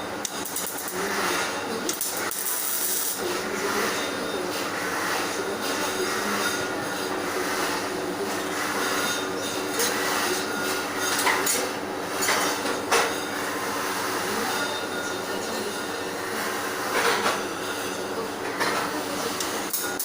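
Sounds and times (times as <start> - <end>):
welder arc crackling: 0.0 - 8.9.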